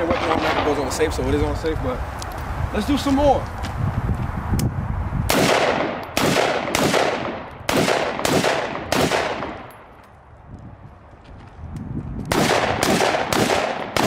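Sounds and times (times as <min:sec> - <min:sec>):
pistol shots with echo: 0:05.3 - 0:09.8, 0:12.3 - 0:14.0.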